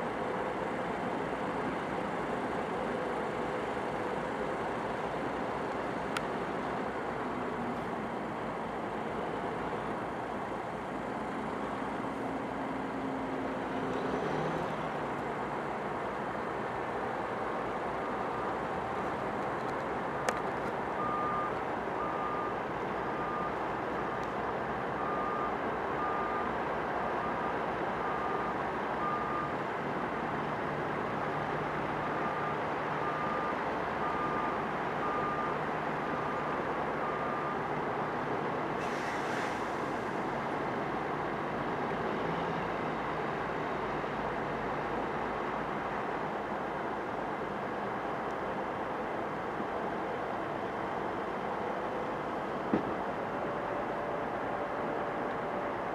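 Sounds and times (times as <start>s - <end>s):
truck reversing alarm beeping: 21.0s - 24.3s, 24.9s - 29.7s, 32.0s - 38.4s.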